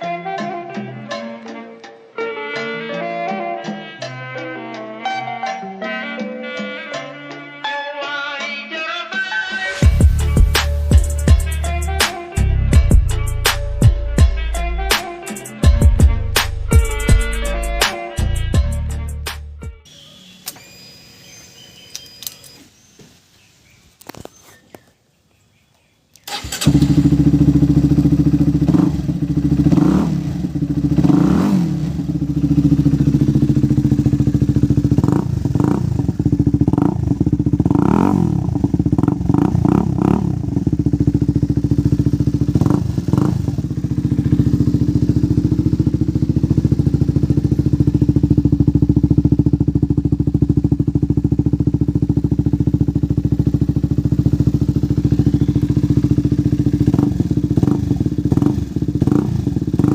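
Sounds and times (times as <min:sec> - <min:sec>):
motorcycle engine idling: 0:09.8 - 0:11.5, 0:26.3 - 0:59.9.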